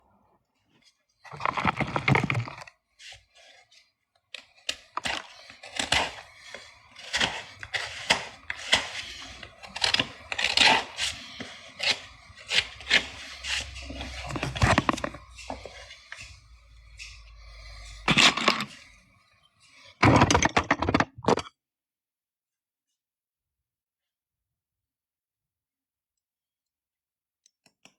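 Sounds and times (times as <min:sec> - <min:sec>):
hand tool scraping horse hoof: 0:01.4 - 0:19.0.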